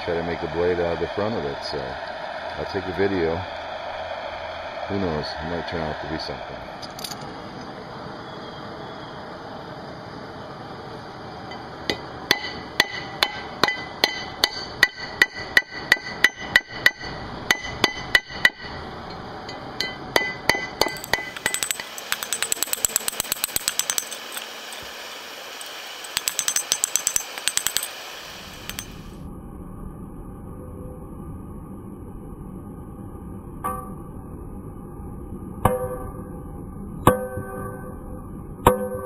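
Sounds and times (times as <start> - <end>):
hammer striking hot steel: 11.5 - 18.8, 19.5 - 29.2.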